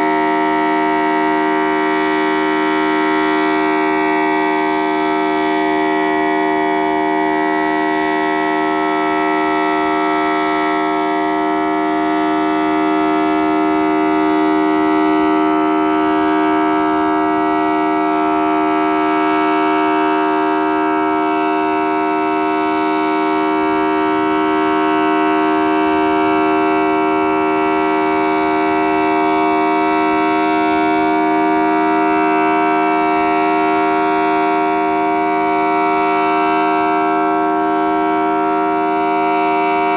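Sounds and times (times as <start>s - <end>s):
siren steady two-tone alert: 0.0s - 39.9s.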